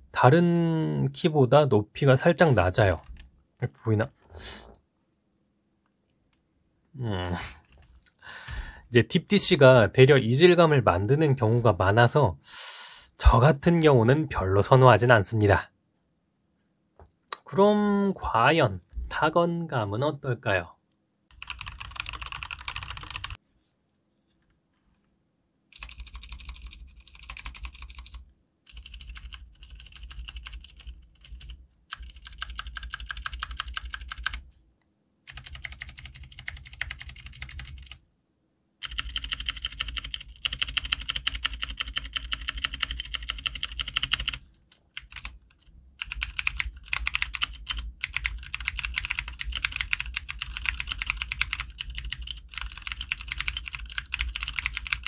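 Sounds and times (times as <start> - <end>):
clicky keyboard typing: 21.3 - 23.4, 25.7 - 34.4, 35.3 - 38.0, 38.8 - 55.0.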